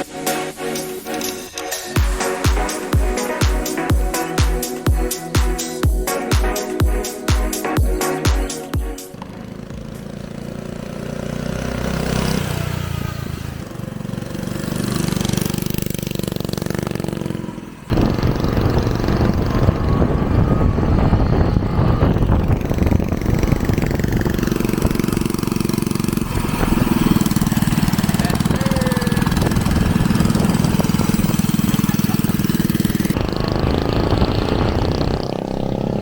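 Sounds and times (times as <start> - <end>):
mini-bike engine running: 9.1 - 36.0.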